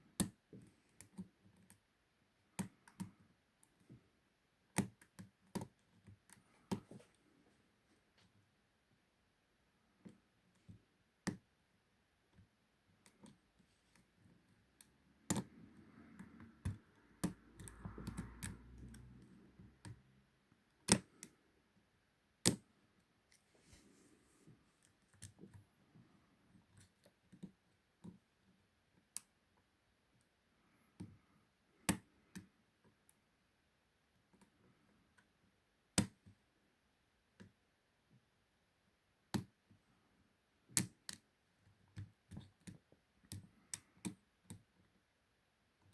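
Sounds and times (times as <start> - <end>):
soft scraping and rustling: 23.3 - 25.0.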